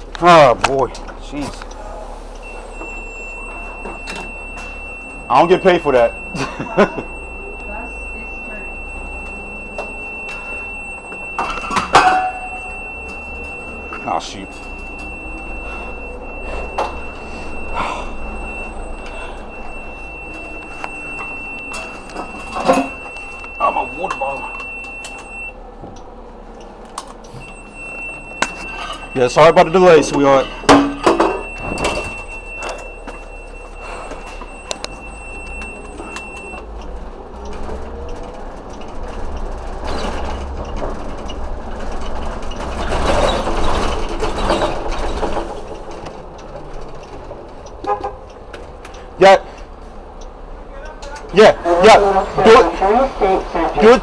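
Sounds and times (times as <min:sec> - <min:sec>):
vehicle engine idling: 0:00.0 - 0:52.2
road noise: 0:00.0 - 0:54.0
thin high tone: 0:02.6 - 0:25.3.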